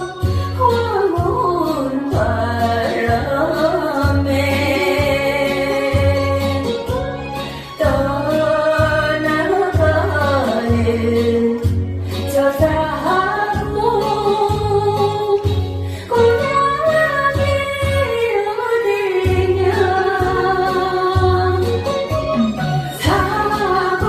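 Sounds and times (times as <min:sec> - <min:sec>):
woman singing: 0:00.0 - 0:24.0
backing track with bass beat: 0:19.2 - 0:24.0.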